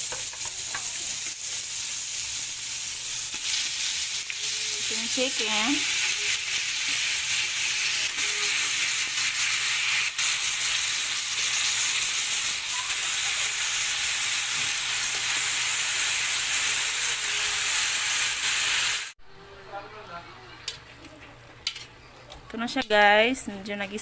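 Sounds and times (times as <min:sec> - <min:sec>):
chicken sizzling in hot oil: 0:00.0 - 0:19.2.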